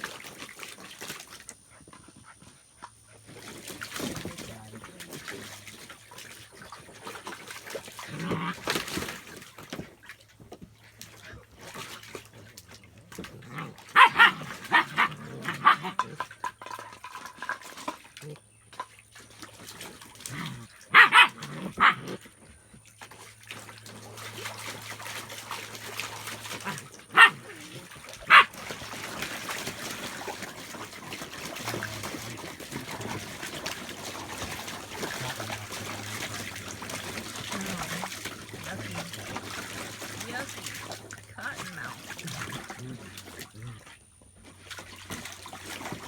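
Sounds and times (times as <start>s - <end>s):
water trickling and splashing: 0.0s - 46.0s
puppies barking: 13.5s - 16.2s, 20.9s - 22.1s, 26.5s - 28.8s.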